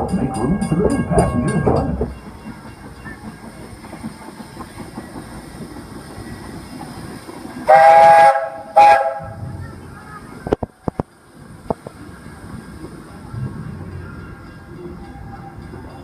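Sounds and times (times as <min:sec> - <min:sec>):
steam train rumble and hiss: 0:00.0 - 0:16.0
steam locomotive whistle: 0:07.6 - 0:09.4.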